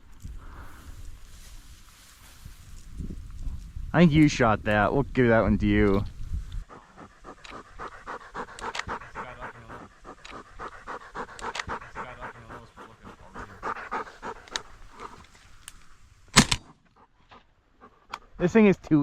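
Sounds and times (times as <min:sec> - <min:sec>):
dog panting rapidly: 0:06.6 - 0:15.5, 0:16.7 - 0:18.6.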